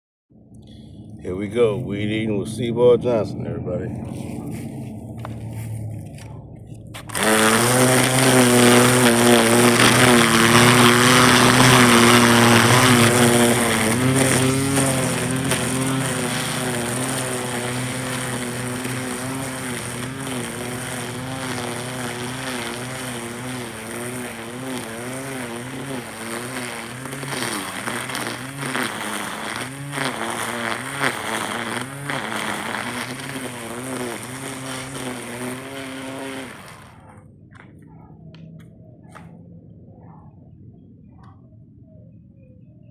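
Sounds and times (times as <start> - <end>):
string trimmer engine: 6.9 - 37.2
trimmer line cutting hiss: 7.0 - 37.2.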